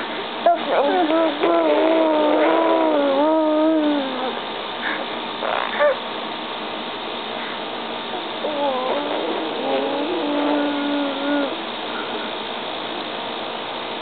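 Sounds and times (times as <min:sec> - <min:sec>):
mouth-made fart noises: 0:00.8 - 0:04.3, 0:05.4 - 0:06.0, 0:08.4 - 0:11.6.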